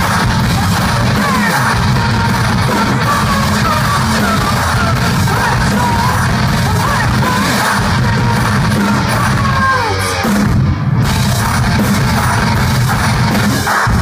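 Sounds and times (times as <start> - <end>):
person yelling and singing: 0.0 - 10.2
rock band playing live: 0.0 - 14.0.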